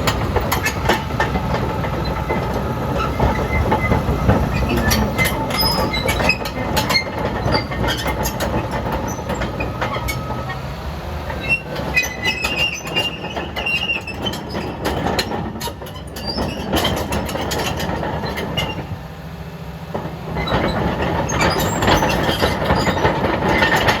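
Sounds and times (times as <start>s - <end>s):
diesel engine running: 0.0s - 24.0s
steel tracks clanking: 0.0s - 24.0s
high squeal from track gear: 4.6s - 8.1s, 11.4s - 14.7s.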